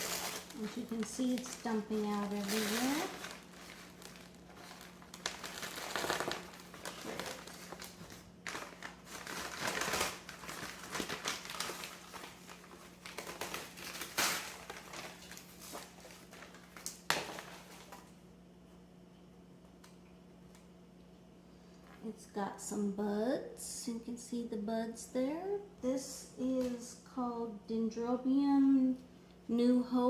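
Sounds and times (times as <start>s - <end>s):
packaging crinkling and rustling: 0.0s - 18.2s.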